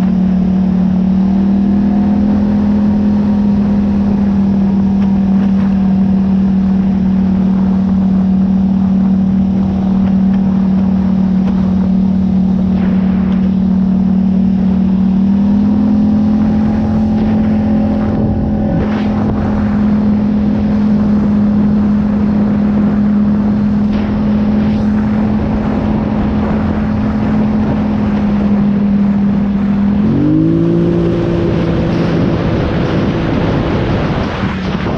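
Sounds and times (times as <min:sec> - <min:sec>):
vehicle engine running: 0:00.0 - 0:34.9
rushing noise: 0:09.5 - 0:34.9.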